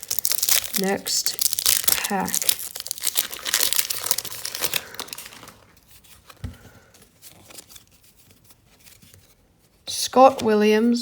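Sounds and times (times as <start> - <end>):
wrapper tearing and crinkling: 0.0 - 5.8
cards rustling: 0.0 - 9.6.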